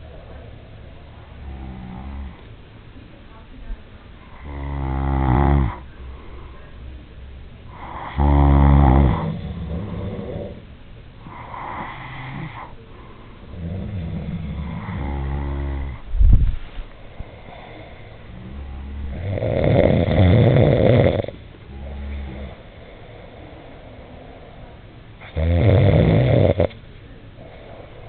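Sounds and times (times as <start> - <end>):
man snoring: 1.4 - 2.4, 4.4 - 5.8, 7.7 - 10.6, 11.3 - 12.7, 13.5 - 16.0, 17.2 - 23.3, 25.2 - 26.7.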